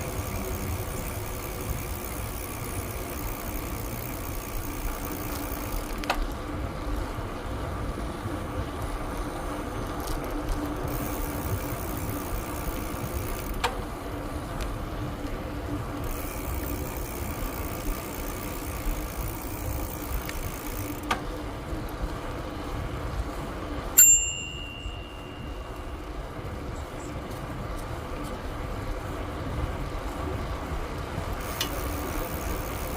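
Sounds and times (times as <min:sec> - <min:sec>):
wind and tyre rolling noise: 0:00.0 - 0:32.9
bicycle bell ding: 0:24.0 - 0:25.9.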